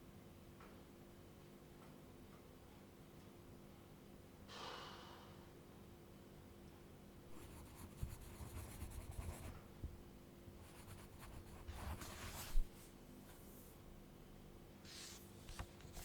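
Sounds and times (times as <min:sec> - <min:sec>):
drawing tool scratching paper: 0:07.3 - 0:09.6, 0:10.6 - 0:12.7.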